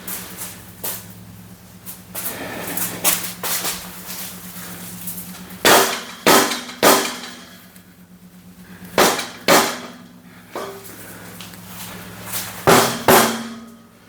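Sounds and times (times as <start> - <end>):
hammer striking steel: 5.6 - 7.7, 9.0 - 10.9, 12.7 - 13.9.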